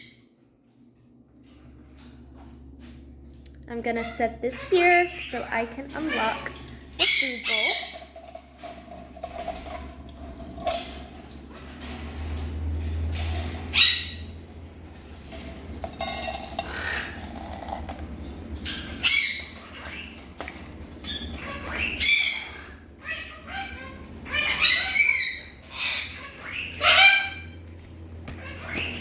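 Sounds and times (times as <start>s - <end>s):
parrots squawking: 4.0s - 8.6s, 13.5s - 14.4s, 16.6s - 17.3s, 18.6s - 20.4s, 21.0s - 27.6s, 28.3s - 29.0s
food bowl clicking and rattling: 6.0s - 13.7s, 14.5s - 23.5s.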